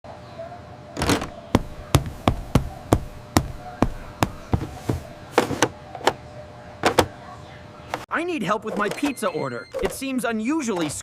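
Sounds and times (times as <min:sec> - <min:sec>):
sharp knocks: 0:01.0 - 0:05.7.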